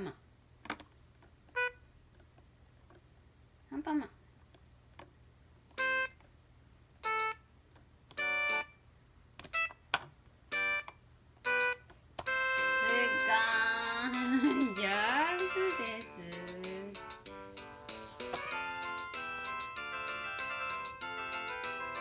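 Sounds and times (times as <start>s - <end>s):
toy keyboard electronic notes: 5.8s - 6.1s, 7.0s - 7.4s, 8.2s - 8.8s, 10.5s - 22.0s
toy playing electronic music: 5.8s - 6.1s, 7.0s - 7.4s, 8.2s - 8.8s, 10.5s - 10.9s, 11.5s - 22.0s.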